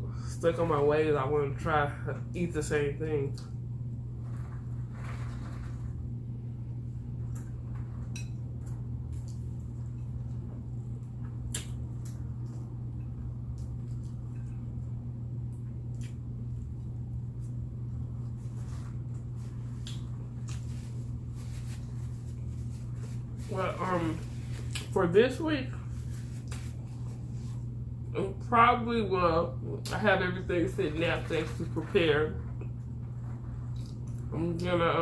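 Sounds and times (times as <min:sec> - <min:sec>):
low electrical hum: 0:00.0 - 0:35.0
person chewing food: 0:15.5 - 0:16.6, 0:19.7 - 0:21.2.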